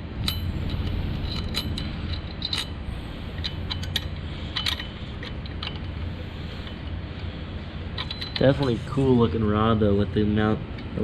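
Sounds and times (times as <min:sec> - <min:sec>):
steady low hum: 0:00.0 - 0:11.0
metallic clicks of tools and parts: 0:00.2 - 0:06.0, 0:08.0 - 0:08.8.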